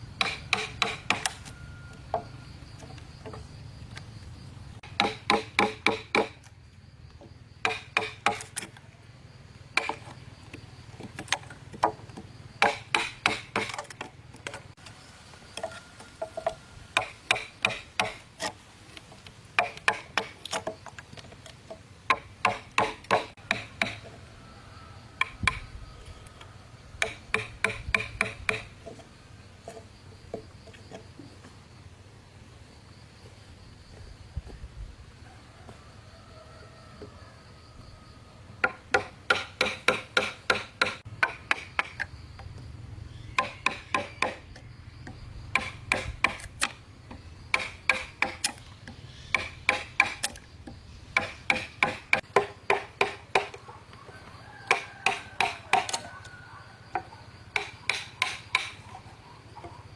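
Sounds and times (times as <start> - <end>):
hammer striking nails: 0.2 - 1.4, 4.8 - 6.4, 7.6 - 8.5, 12.6 - 14.0, 17.0 - 18.2, 22.1 - 24.0, 27.0 - 28.7, 38.6 - 42.0, 43.4 - 44.4, 45.5 - 46.8, 47.5 - 48.6, 49.3 - 50.4, 51.2 - 53.6, 57.6 - 58.8.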